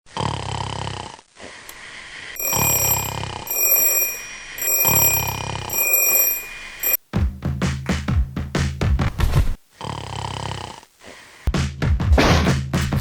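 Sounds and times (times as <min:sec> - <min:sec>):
high electronic ringing tone: 0:02.4 - 0:07.0.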